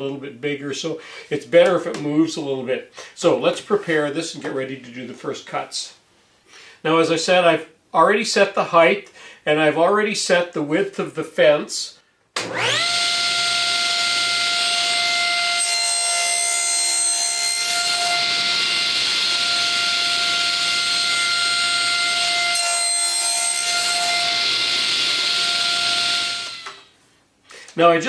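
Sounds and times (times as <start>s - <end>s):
saw cutting through board: 12.4s - 26.9s
table saw whining: 12.4s - 26.9s.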